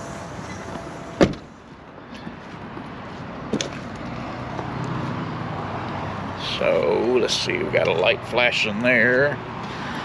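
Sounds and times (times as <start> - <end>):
truck door slamming: 1.0 - 1.5.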